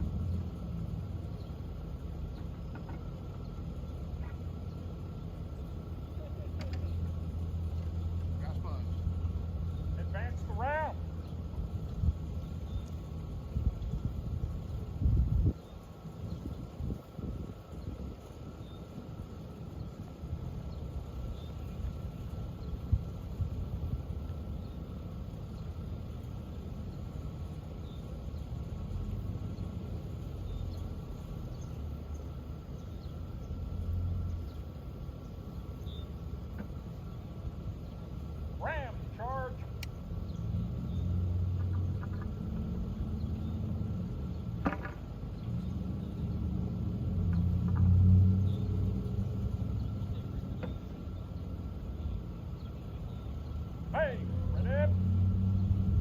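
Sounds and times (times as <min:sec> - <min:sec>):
low steady rumble: 0:00.0 - 0:56.0
faint clicks: 0:39.8 - 0:40.0.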